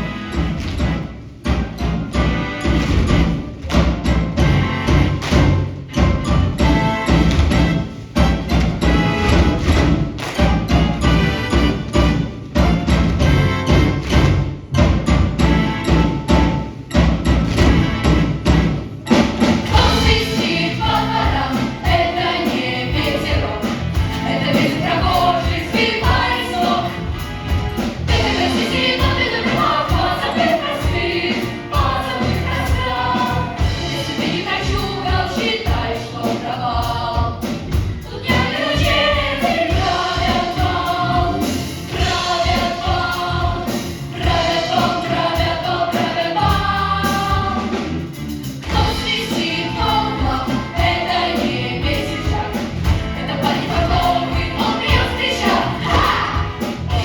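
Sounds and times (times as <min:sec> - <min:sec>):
chorus singing with band: 0:15.4 - 0:57.0.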